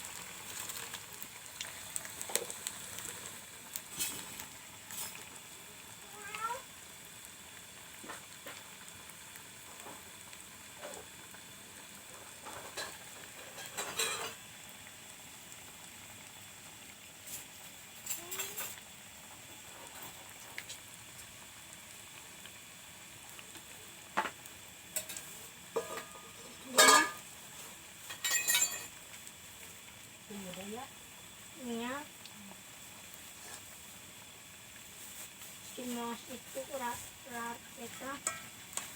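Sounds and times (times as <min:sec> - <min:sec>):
utensils clinking on cookware: 0:12.5 - 0:14.4, 0:25.0 - 0:27.2, 0:28.1 - 0:29.0, 0:37.9 - 0:38.5.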